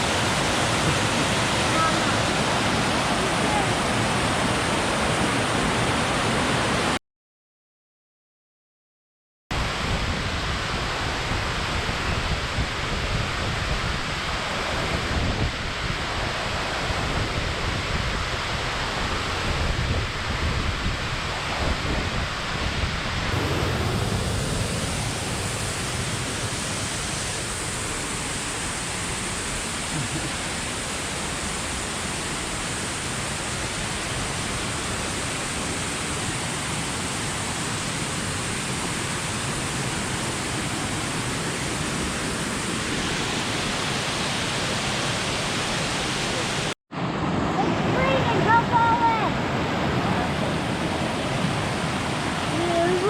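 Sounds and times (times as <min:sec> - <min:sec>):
waterfall rushing: 0:00.0 - 0:07.0, 0:21.0 - 0:53.0.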